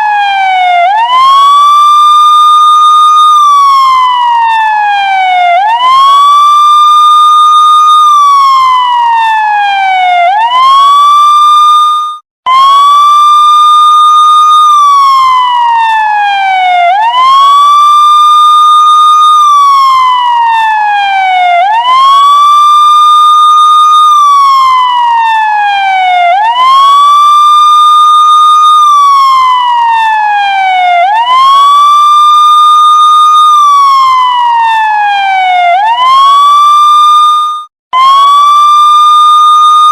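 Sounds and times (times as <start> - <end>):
police car siren wailing: 0.0 - 39.9.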